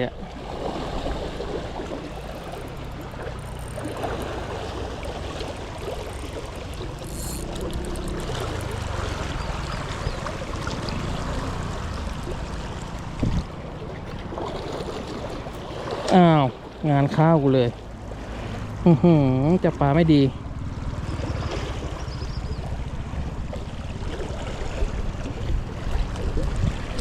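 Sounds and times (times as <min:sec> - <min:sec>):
water rushing: 0:00.0 - 0:27.0.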